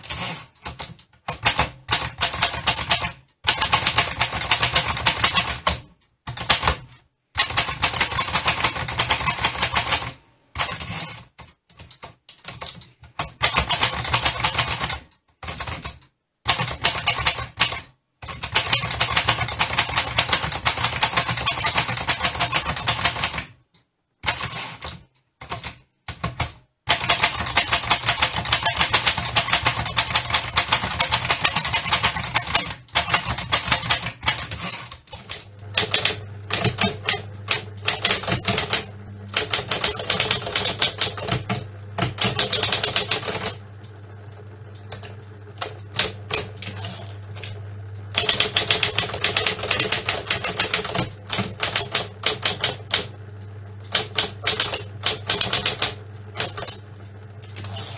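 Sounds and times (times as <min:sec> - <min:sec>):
typewriter keys clacking: 0:07.4 - 0:23.4, 0:24.2 - 0:43.6, 0:48.1 - 0:53.1, 0:53.9 - 0:56.8.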